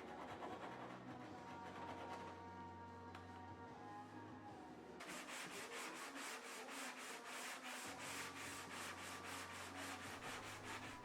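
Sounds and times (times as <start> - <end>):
sandpaper rubbing on sheet metal: 0.0 - 2.2, 5.0 - 11.0
background music: 0.0 - 11.0.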